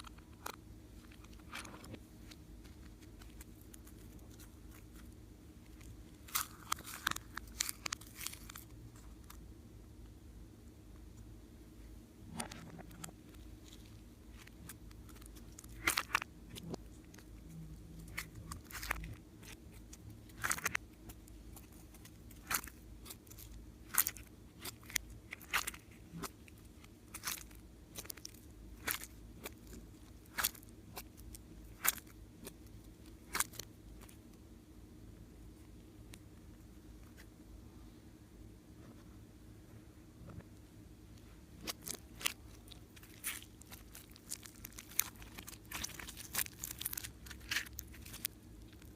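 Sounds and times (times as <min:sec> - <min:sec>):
slime crackling and popping: 0:00.0 - 0:09.4, 0:12.8 - 0:34.2, 0:41.6 - 0:48.9.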